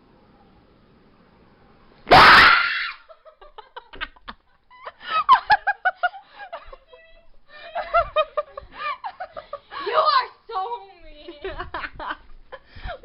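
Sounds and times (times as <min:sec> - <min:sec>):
girl screaming: 0:02.1 - 0:03.0
giggling laughter: 0:03.1 - 0:09.7.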